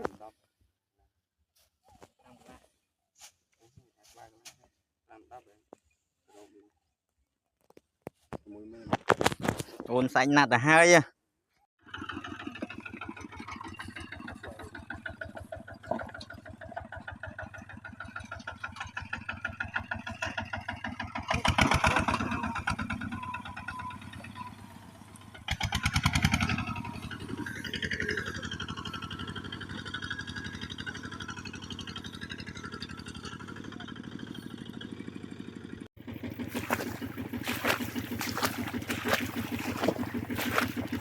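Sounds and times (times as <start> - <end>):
small engine revving: 11.8 - 41.0.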